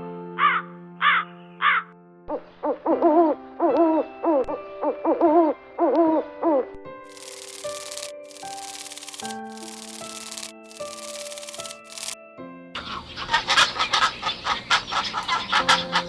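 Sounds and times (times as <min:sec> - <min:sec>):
steady held background tones: 0:07.1 - 0:12.2.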